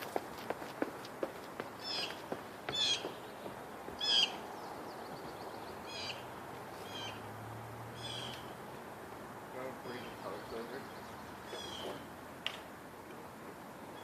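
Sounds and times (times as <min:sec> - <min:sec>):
bird chirping: 0:01.8 - 0:07.2, 0:09.9 - 0:12.1.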